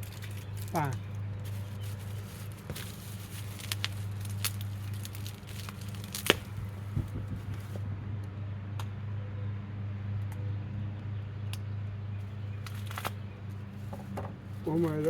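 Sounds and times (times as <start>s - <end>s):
packing tape and cardboard tearing: 0.0s - 7.8s.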